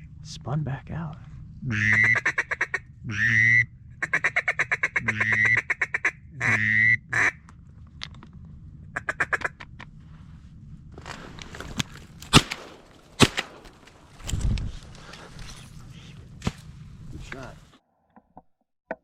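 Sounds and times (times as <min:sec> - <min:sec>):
duck quacking: 0:01.6 - 0:07.4, 0:09.0 - 0:09.6.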